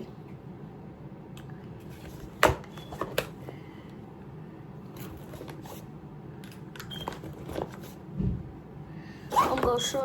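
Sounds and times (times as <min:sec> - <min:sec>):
low room hum: 0:00.0 - 0:10.0.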